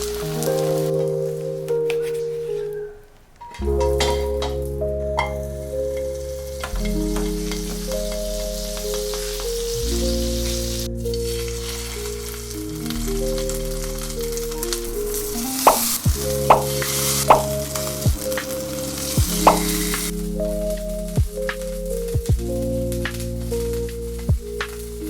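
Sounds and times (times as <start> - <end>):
soft background music: 0.0 - 25.0
fish sizzling in a frying pan: 18.6 - 20.1.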